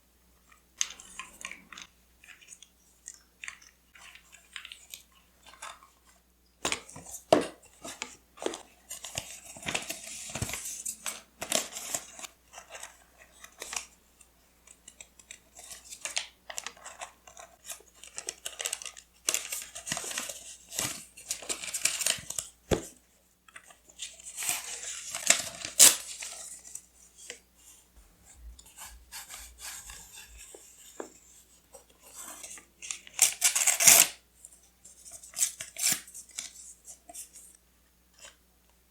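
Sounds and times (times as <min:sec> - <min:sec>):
paper tearing and rustling: 0:24.2 - 0:26.6.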